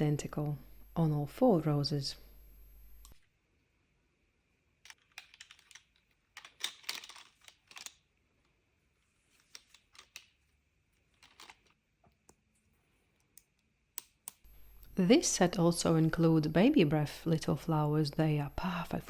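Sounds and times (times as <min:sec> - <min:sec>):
plastic bricks clicking and rattling: 0:04.8 - 0:08.0.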